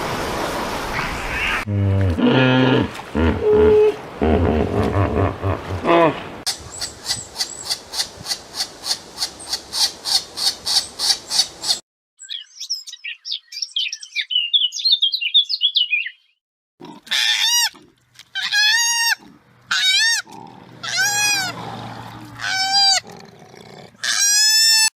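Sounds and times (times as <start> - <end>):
high bird twittering: 6.7 - 16.4.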